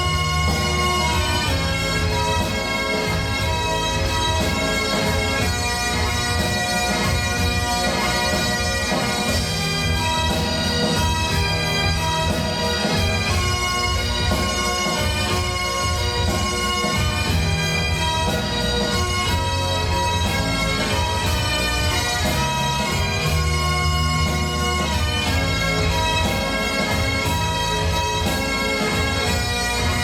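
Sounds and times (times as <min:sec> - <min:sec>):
bagpipes playing a march: 0:00.0 - 0:30.0.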